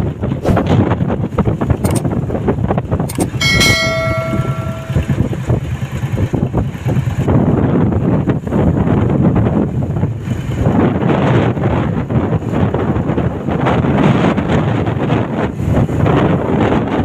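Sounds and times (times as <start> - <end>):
wind buffeting microphone: 0.0 - 17.0
metallic bell-like clang: 3.4 - 5.4.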